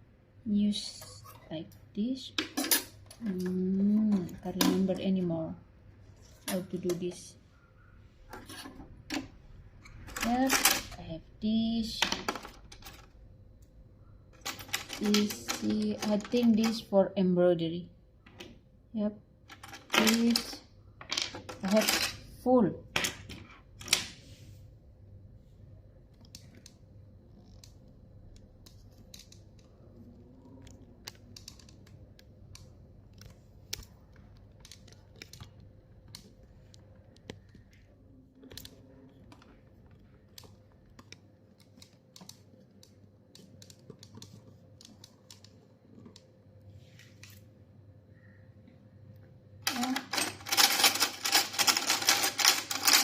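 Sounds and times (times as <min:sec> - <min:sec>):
small metal parts clicking: 0:49.6 - 0:53.0.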